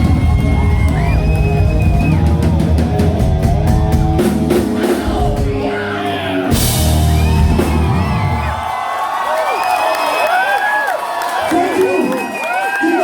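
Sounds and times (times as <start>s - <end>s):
rapid drum fill: 0.0s - 5.8s, 6.5s - 8.6s
live rock band: 0.0s - 8.9s
crowd yelling and whistling: 0.0s - 13.0s.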